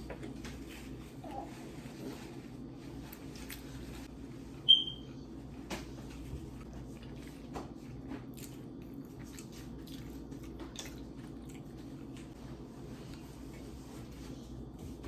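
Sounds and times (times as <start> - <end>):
low steady hum: 0.0 - 15.0
wet chewing: 6.6 - 12.4.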